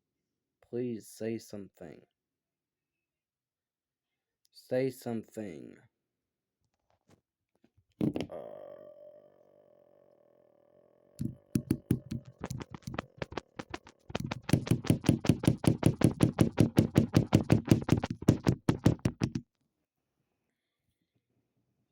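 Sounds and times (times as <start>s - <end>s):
fast sharp knocks: 11.2s - 19.4s.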